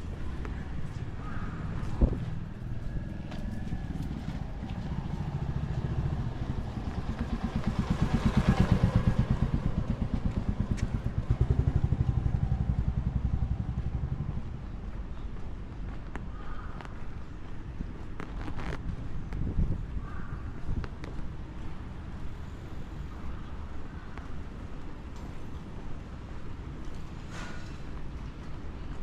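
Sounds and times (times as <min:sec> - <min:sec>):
vehicles passing: 0:00.0 - 0:29.0.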